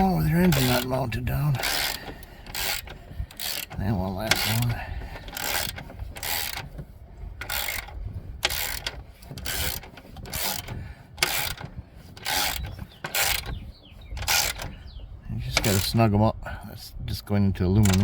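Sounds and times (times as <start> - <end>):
socket ratchet clicking: 1.6 - 4.6, 5.2 - 6.6, 7.4 - 13.6, 14.2 - 14.8.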